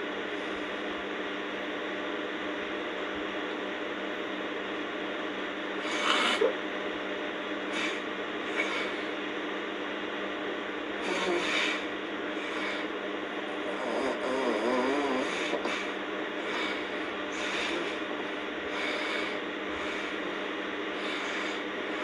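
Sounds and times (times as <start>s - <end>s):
girl snoring: 5.8s - 6.6s, 7.7s - 9.1s, 11.0s - 12.9s, 13.5s - 18.1s, 18.7s - 22.0s.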